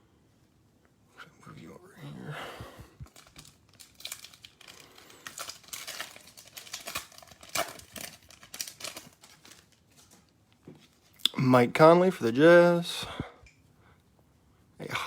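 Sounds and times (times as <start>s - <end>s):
cards and plastic sleeves crinkling: 3.0s - 11.3s.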